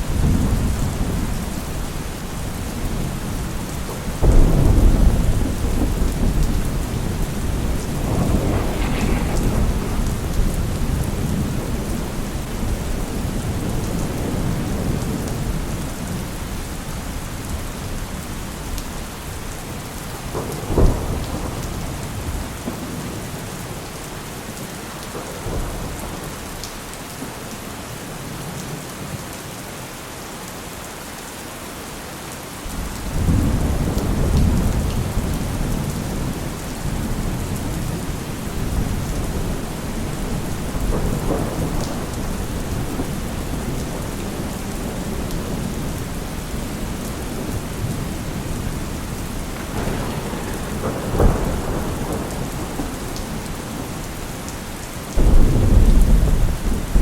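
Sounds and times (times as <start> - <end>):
deep thunder rumble: 0.0 - 16.6, 19.7 - 23.4, 32.7 - 57.0
heavy rain: 0.0 - 57.0
thunder crack: 4.2 - 15.1, 20.3 - 23.0, 36.9 - 45.7, 46.6 - 54.4, 55.2 - 57.0.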